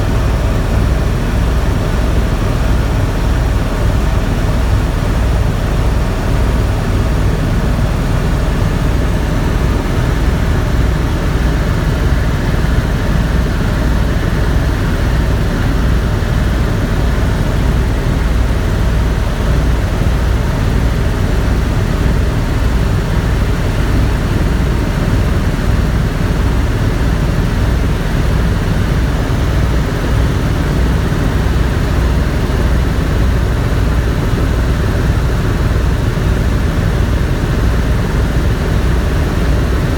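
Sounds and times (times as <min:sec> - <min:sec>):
helicopter engine and rotor drone: 0:00.0 - 0:39.9.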